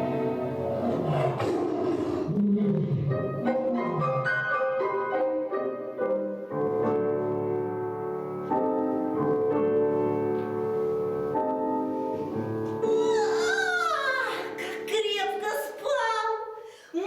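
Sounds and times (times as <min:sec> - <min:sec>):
slow piano chords: 0:00.0 - 0:14.9.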